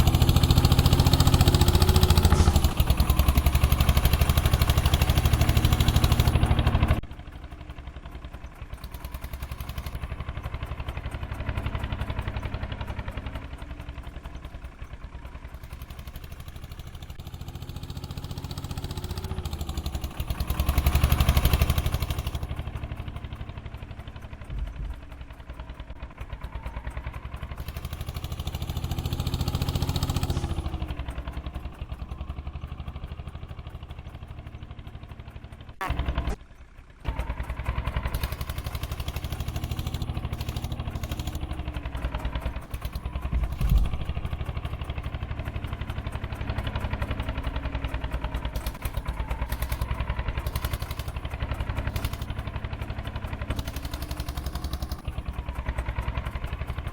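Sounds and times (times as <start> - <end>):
heavy diesel engine running: 0.0 - 56.9
single thump: 2.2 - 3.1.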